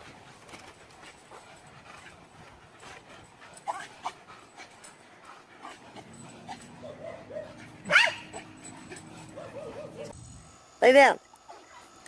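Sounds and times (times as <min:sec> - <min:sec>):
dog yelping: 0:06.5 - 0:10.2
dog whimpering: 0:06.6 - 0:10.1.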